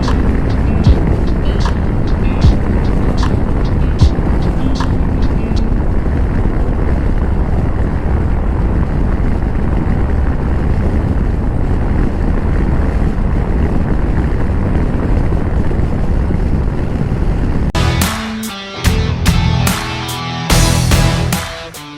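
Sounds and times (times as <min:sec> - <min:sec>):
motorcycle engine: 0:00.0 - 0:05.8, 0:20.5 - 0:21.7
road rumble: 0:00.0 - 0:18.0.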